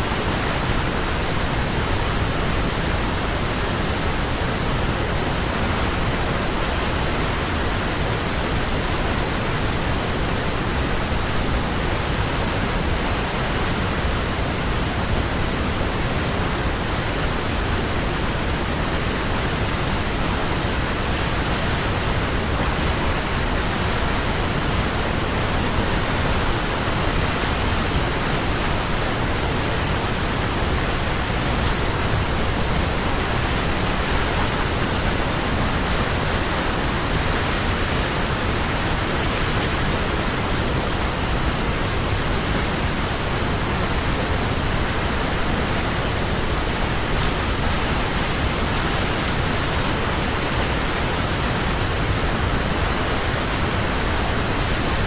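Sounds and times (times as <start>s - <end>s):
waterfall roaring: 0.0s - 55.0s.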